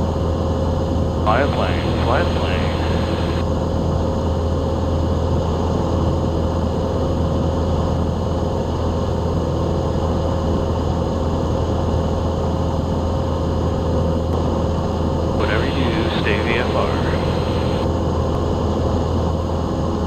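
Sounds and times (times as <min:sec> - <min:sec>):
propeller plane engine drone: 0:00.0 - 0:20.0.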